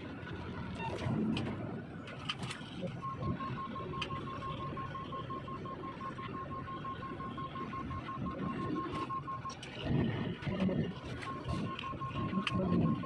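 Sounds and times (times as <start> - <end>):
low engine rumble: 0.0 - 13.0
rapid high beeps: 2.8 - 13.0.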